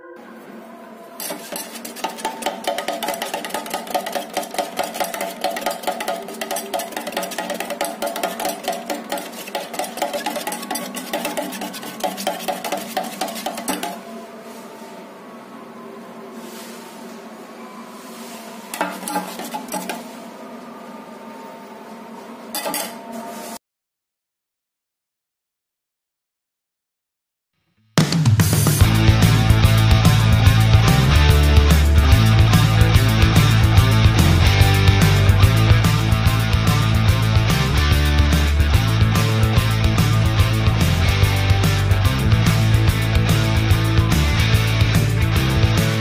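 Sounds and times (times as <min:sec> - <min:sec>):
steady hum: 0:00.1 - 0:23.3
stirrer scraping paint container: 0:01.2 - 0:14.1, 0:18.8 - 0:20.2
fast plucked percussive beat: 0:02.0 - 0:13.9.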